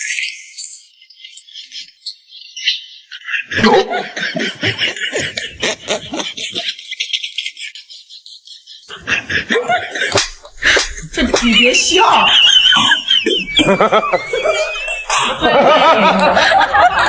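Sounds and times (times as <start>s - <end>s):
person laughing: 3.4s - 17.0s.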